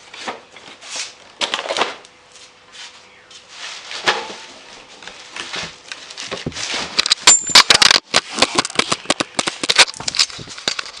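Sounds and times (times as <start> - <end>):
crackling rustles: 0.1 - 11.0.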